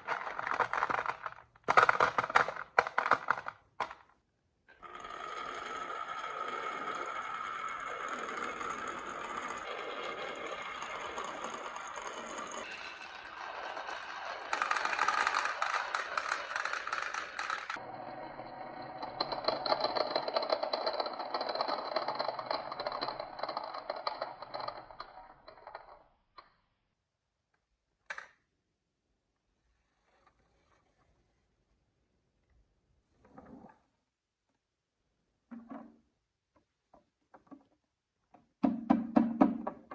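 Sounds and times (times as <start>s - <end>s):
marbles rattling down a track: 0.0s - 4.0s, 4.8s - 26.0s.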